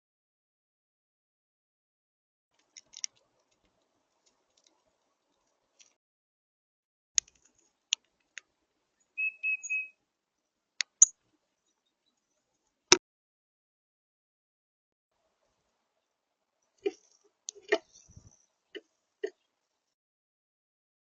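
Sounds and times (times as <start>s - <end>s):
short whistled bird notes: 9.2s - 10.0s.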